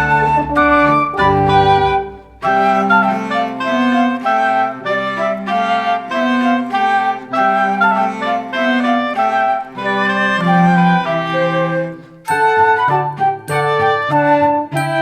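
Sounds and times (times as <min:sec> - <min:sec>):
synth bass line: 0:00.0 - 0:03.4
synthesised woodwind melody: 0:00.0 - 0:15.0.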